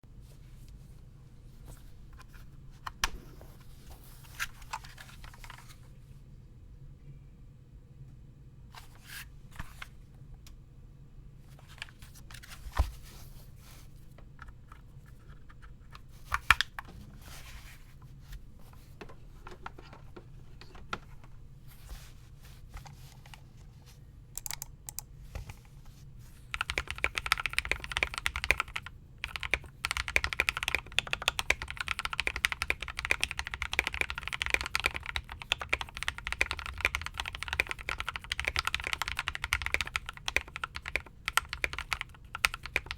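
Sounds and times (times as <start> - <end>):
fast typing on keyboard: 26.5 - 42.9.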